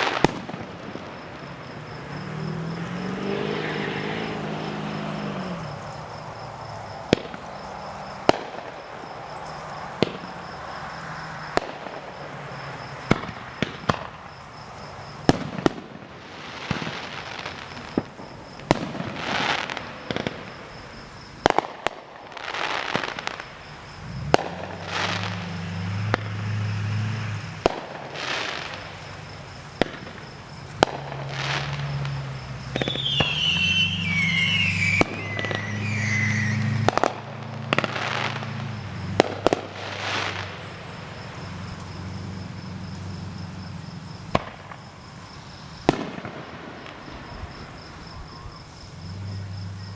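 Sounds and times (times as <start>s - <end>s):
fireworks booming: 0.0s - 49.0s
fireworks crackling hiss: 0.0s - 49.9s
wavering firework whistle: 24.3s - 29.2s, 29.8s - 40.7s.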